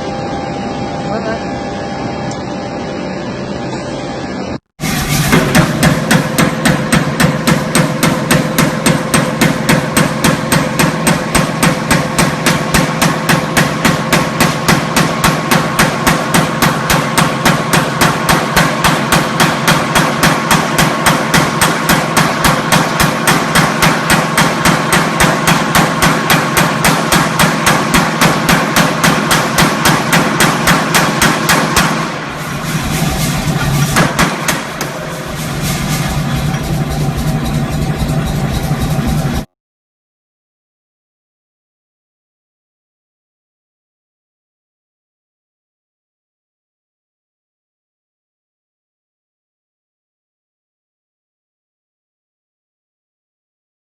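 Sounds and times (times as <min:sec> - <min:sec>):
mechanical hum: 0:00.0 - 0:39.5
factory machine hammering: 0:04.8 - 0:39.5.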